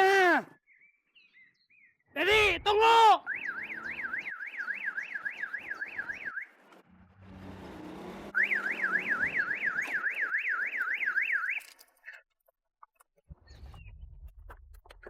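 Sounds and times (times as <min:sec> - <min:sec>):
electronic warbling siren: 0:03.2 - 0:06.6, 0:08.3 - 0:11.7.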